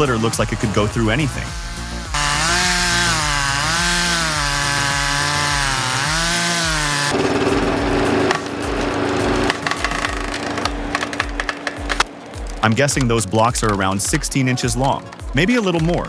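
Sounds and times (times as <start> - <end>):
motor saw cutting wood: 0.0 - 12.2
machine hum: 0.0 - 15.5
sharp knocks: 1.5 - 16.0.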